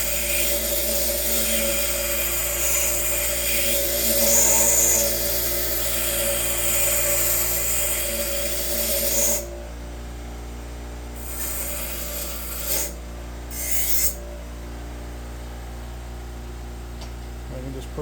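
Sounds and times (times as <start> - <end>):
grinder wheel grinding steel: 0.0 - 9.6, 11.2 - 14.3
grinder motor humming: 0.0 - 9.7, 11.2 - 14.3.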